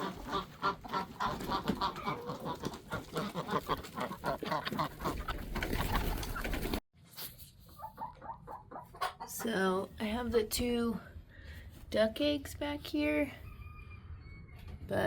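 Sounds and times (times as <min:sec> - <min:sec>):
chickens clucking: 0:00.0 - 0:06.8, 0:07.6 - 0:09.9.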